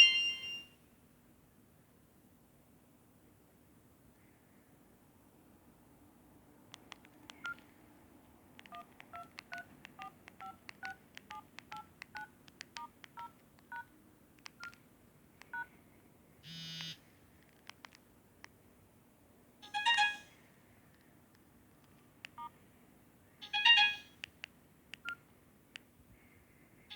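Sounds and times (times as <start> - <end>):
key clicks: 6.7 - 7.7, 8.5 - 14.8, 16.7 - 18.0
two-tone dialing beeps: 16.5 - 17.0.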